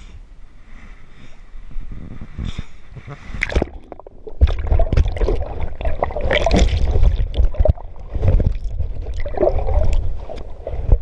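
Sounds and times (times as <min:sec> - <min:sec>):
low rumble on microphone: 0:00.0 - 0:11.0
water splashing from swimming: 0:03.4 - 0:11.0.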